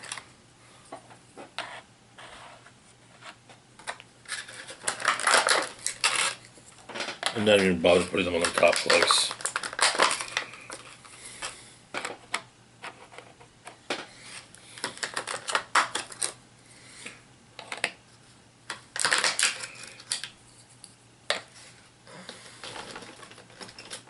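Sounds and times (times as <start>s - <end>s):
plastic figures clicking and clattering: 3.8s - 12.5s, 14.8s - 16.4s, 18.7s - 20.4s, 22.6s - 24.0s.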